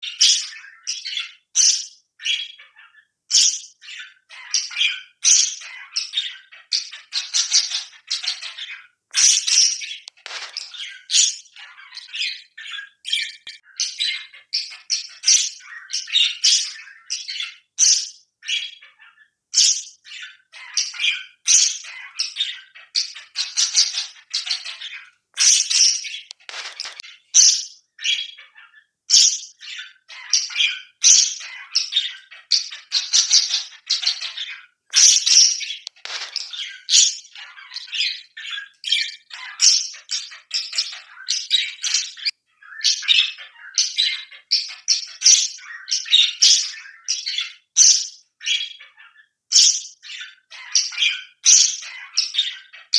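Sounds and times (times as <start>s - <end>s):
parrots squawking and chirping: 5.6s - 15.8s, 20.2s - 45.8s
parrots squawking: 7.1s - 11.0s, 23.3s - 27.6s, 32.7s - 37.5s.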